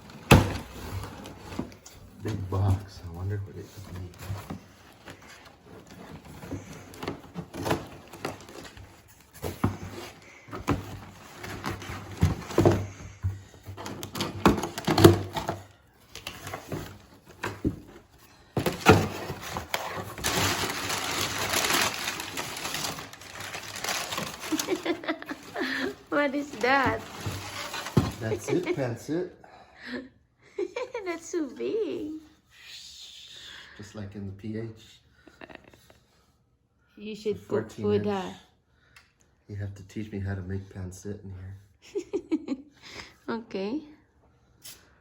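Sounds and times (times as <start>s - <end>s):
cardboard and paper rustling: 0.0s - 29.0s.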